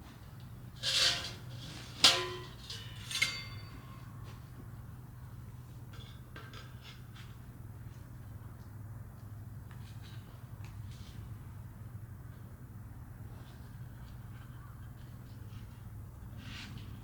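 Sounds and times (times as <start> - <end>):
ringing clinks: 2.2 - 4.0.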